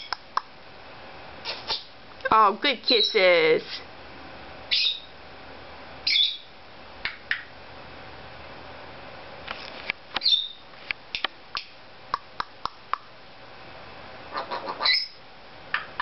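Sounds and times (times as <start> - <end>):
parrot squawking: 4.7 - 5.1, 6.0 - 6.5, 10.2 - 10.6, 14.3 - 15.2.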